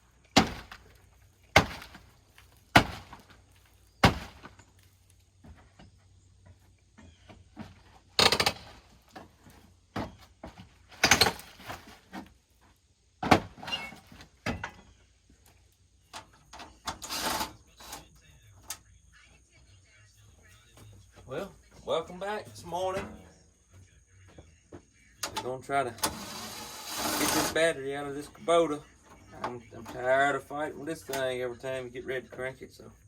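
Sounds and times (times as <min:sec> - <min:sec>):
sharp knocks and bangs: 0:01.5 - 0:02.0, 0:02.7 - 0:03.2, 0:04.0 - 0:04.5.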